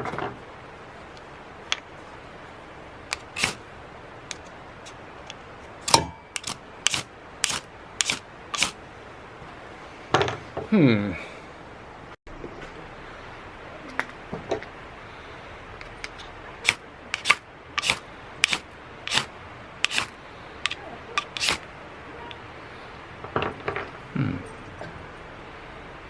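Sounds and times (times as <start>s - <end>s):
camp stove pump strokes: 3.1s - 3.6s, 4.3s - 8.8s, 15.8s - 21.7s.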